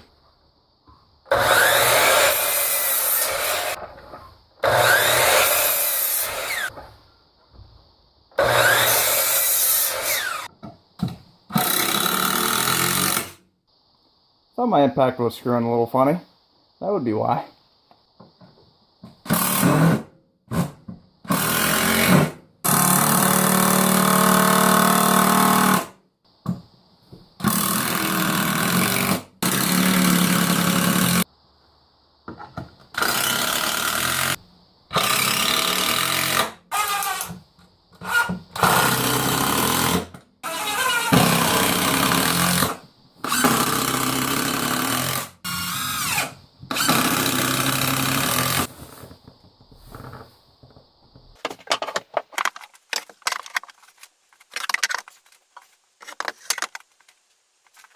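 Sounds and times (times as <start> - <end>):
impact driver driving screws into wood: 38.0 - 48.7.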